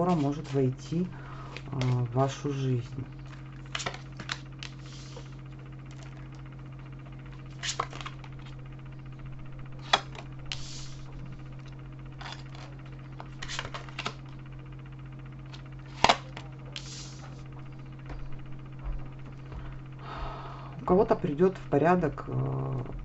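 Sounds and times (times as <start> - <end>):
steady low hum: 0.0 - 23.0
cards swishing slides: 10.5 - 11.1, 16.8 - 17.4.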